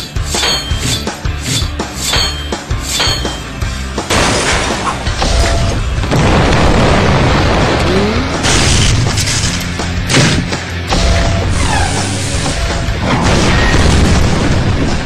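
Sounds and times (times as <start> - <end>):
sustained rumbling roar: 6.0 - 9.1.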